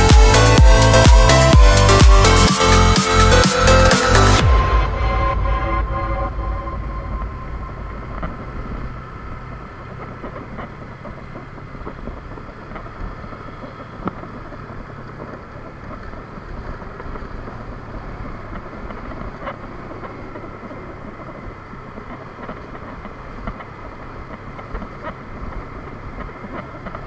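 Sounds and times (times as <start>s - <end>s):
music track: 0.0s - 9.6s
steady rushing noise: 0.0s - 12.2s.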